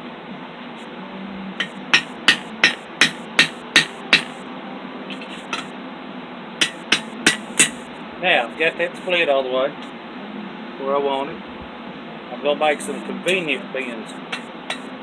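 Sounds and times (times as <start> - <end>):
steady background hiss: 0.0 - 15.0
hammer striking steel on anvil: 1.6 - 4.4, 5.1 - 5.7, 6.6 - 7.9.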